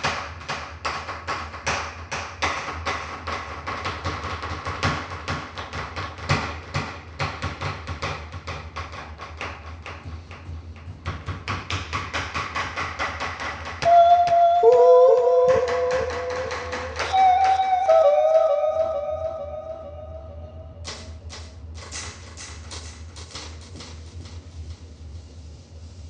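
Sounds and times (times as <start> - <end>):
held electronic keyboard notes: 13.8 - 20.8.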